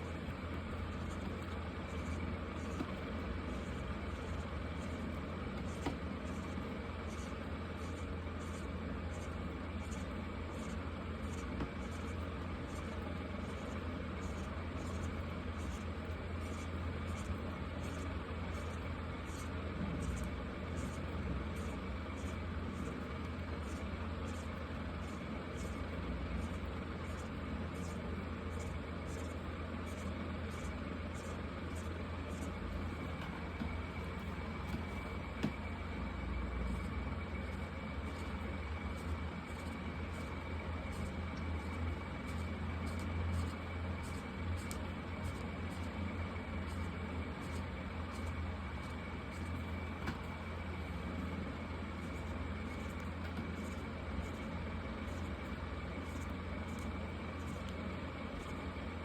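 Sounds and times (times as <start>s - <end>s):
marker scratching on paper: 0.0s - 23.0s
steady low hum: 0.0s - 59.0s.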